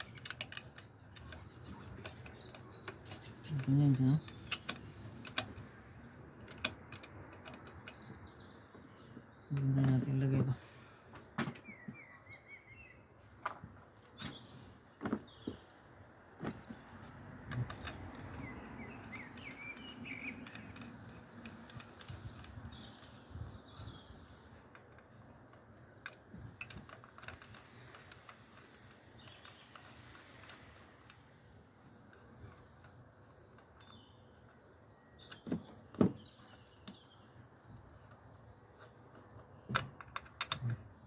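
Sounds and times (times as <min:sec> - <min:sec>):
small parts clicking: 0:00.0 - 0:08.4, 0:17.0 - 0:35.7, 0:36.4 - 0:41.0
birds chirping: 0:00.0 - 0:41.0.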